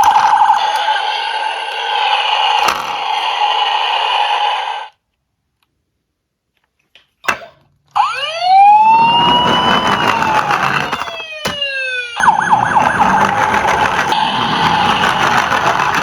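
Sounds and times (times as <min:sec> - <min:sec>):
siren wail: 0:08.0 - 0:09.0, 0:11.9 - 0:14.0
emergency siren steady tones: 0:11.9 - 0:13.3.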